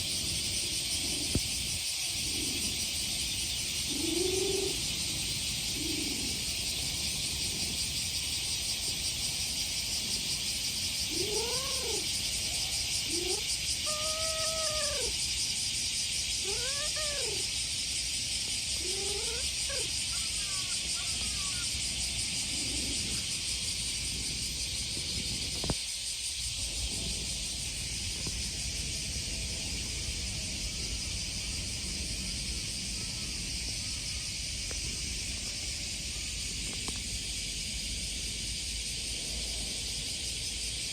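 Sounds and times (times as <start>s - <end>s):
cicadas droning: 0.0s - 40.9s
cat meowing: 13.9s - 15.1s, 16.4s - 17.4s.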